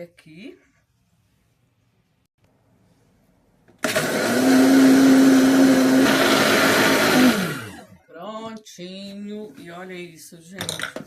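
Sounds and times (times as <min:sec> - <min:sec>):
blender motor spinning down: 0:03.8 - 0:08.0
kitchen blender running: 0:03.8 - 0:08.0.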